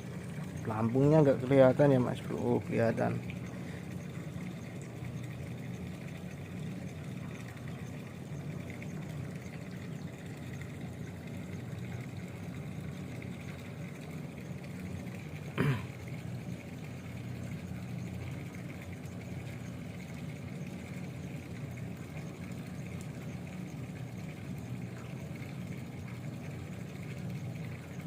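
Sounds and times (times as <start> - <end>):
low engine-like hum: 0.0 - 28.0.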